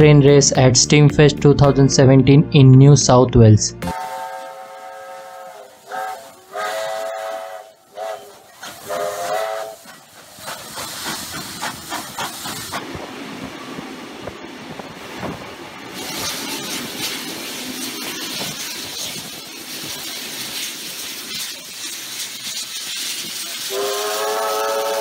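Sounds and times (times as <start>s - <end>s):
steam locomotive hiss and exhaust beats: 3.8s - 25.0s
steam locomotive chime whistle: 3.9s - 9.9s, 23.6s - 25.0s.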